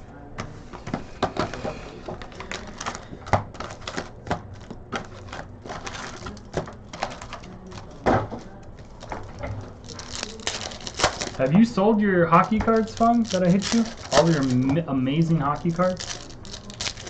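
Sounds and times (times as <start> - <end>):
pack wrappers rustling: 1.5 - 17.0.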